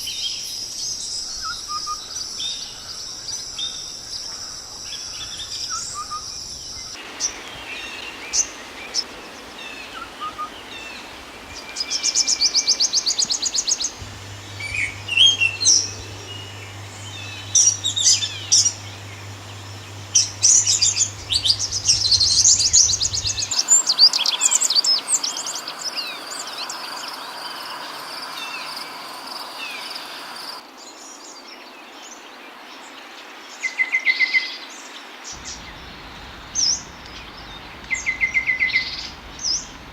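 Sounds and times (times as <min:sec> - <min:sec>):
steady hiss: 0:06.9 - 0:30.7, 0:35.4 - 0:39.9
songbirds singing and calling: 0:35.4 - 0:39.9.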